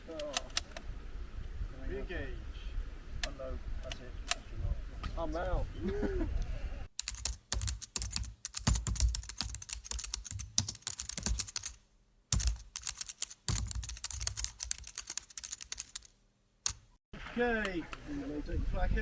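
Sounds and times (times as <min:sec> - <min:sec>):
rifle gear clicking and rattling: 0:07.0 - 0:11.8, 0:12.4 - 0:16.1.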